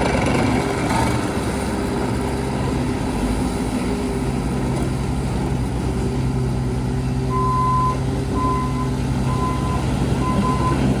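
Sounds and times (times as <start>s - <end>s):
loader engine running: 0.0s - 11.0s
reversing alarm beeping: 7.3s - 10.9s.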